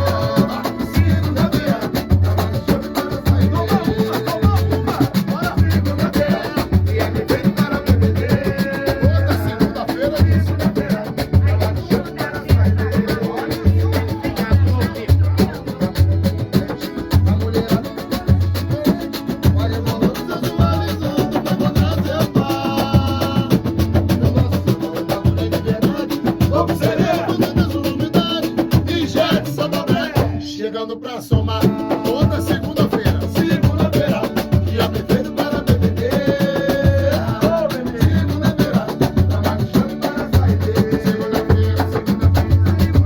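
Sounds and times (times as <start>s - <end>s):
deep bass drum beat: 0.0s - 30.4s, 31.4s - 43.0s
hand percussion: 0.0s - 30.4s, 31.4s - 43.0s
samba band playing: 0.0s - 30.5s, 31.2s - 43.0s.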